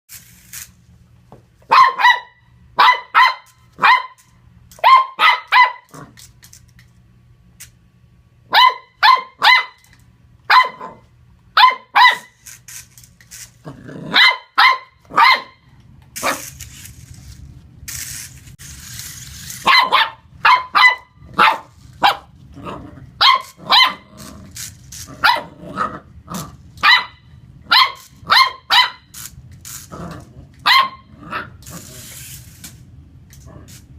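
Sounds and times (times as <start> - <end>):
puppy yapping: 1.7 - 4.2, 4.8 - 6.0, 8.5 - 9.8, 10.5 - 11.0, 11.6 - 12.3, 14.1 - 15.6, 19.6 - 22.3, 23.2 - 24.1, 26.8 - 29.1, 30.6 - 31.6.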